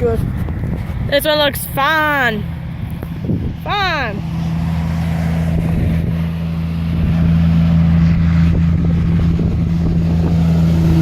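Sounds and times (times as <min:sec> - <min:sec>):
road noise: 0:00.0 - 0:11.0
truck engine drone: 0:00.0 - 0:11.0.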